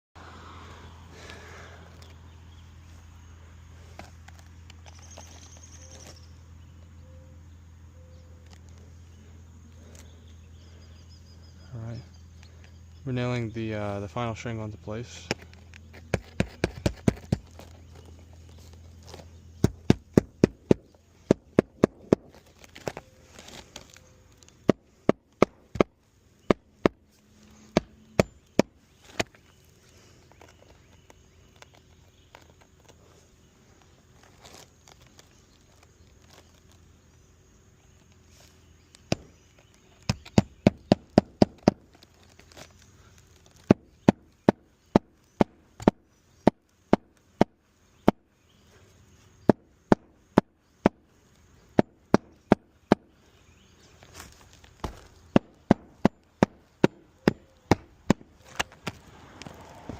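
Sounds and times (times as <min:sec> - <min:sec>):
hammer driving roofing nails: 0:40.0 - 0:42.5.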